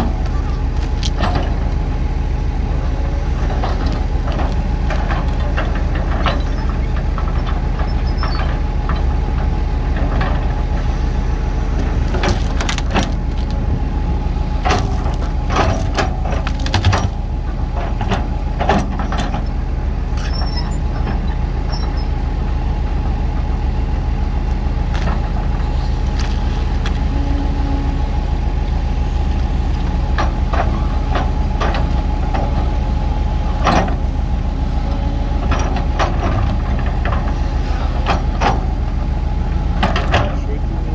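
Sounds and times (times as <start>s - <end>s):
heavy machinery engine humming: 0.0s - 40.9s
clanks and knocks: 11.8s - 13.8s, 14.6s - 19.6s, 39.8s - 40.4s.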